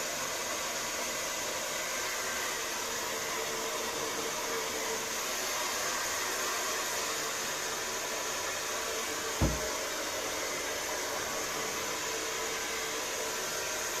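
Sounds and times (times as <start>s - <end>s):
hair dryer blowing: 0.0s - 14.0s
low thump: 9.4s - 9.7s.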